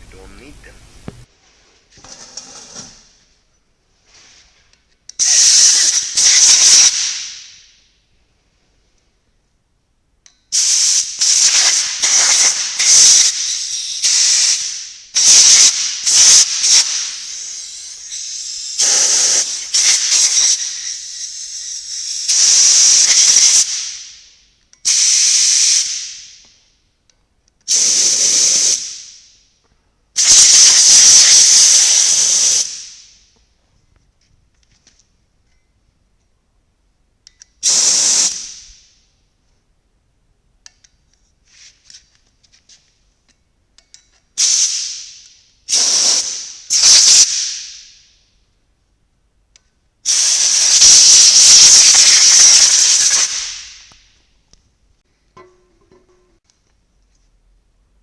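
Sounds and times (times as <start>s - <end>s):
compressed air blasts: 5.2s - 7.8s, 10.5s - 26.4s, 27.7s - 29.3s, 30.2s - 33.3s, 37.6s - 38.9s, 44.4s - 48.1s, 50.0s - 54.1s.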